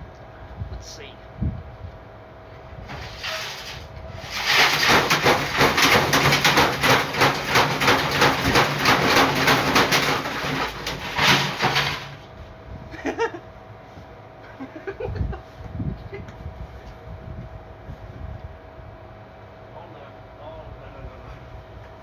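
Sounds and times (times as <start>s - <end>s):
washing machine banging and rattling: 2.9s - 12.3s.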